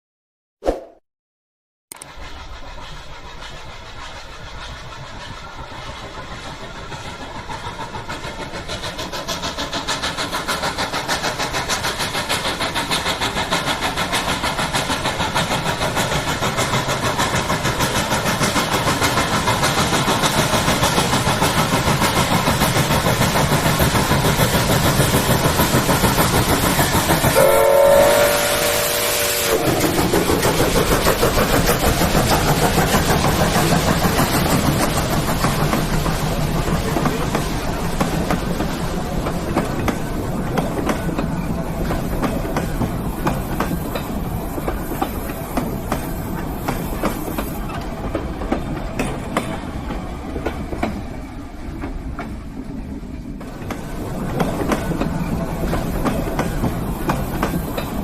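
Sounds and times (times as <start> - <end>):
steam locomotive chuffing: 1.9 - 58.0
steam whistle blowing: 27.3 - 30.0.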